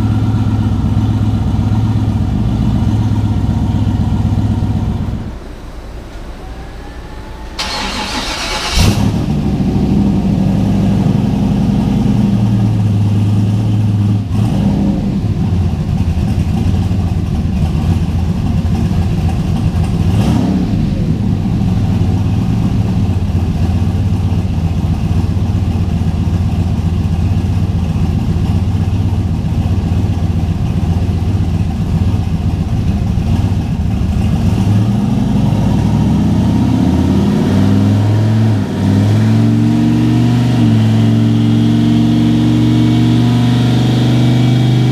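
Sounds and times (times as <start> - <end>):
turbocharged engine running under load: 0.0 - 44.9.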